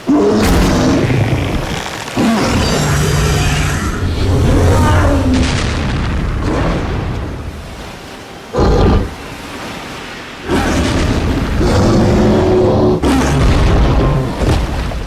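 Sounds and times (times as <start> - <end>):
giant ape grunt: 0.0 - 5.7, 8.6 - 9.2, 10.5 - 14.5
giant ape roaring: 0.0 - 5.8, 8.6 - 9.2, 10.5 - 14.5.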